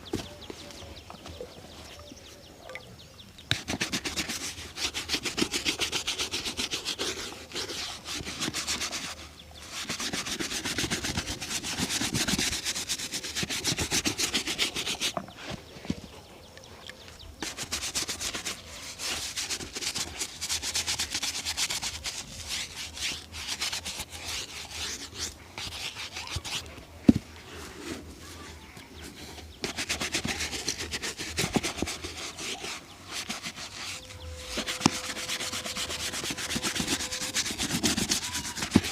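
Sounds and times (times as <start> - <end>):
shoe being rubbed rapidly: 3.6 - 15.2, 17.4 - 26.8, 29.1 - 38.9.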